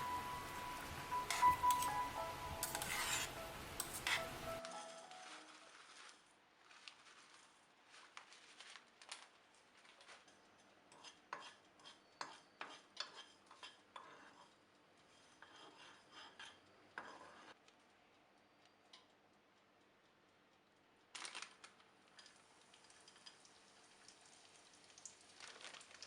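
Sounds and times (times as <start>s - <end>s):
utensils clinking on dishes: 0.0s - 5.7s.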